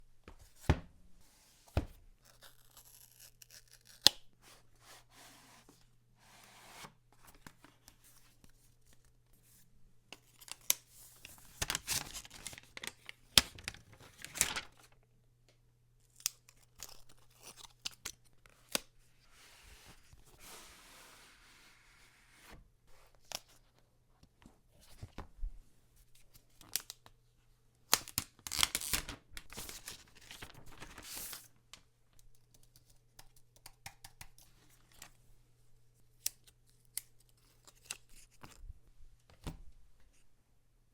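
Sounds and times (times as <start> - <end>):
paper tearing and rustling: 11.5 - 14.9, 27.9 - 31.5.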